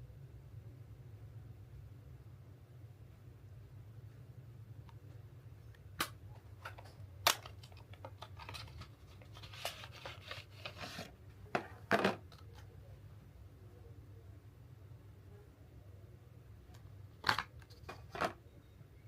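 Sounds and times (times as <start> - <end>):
packaging rustling: 7.4 - 11.1.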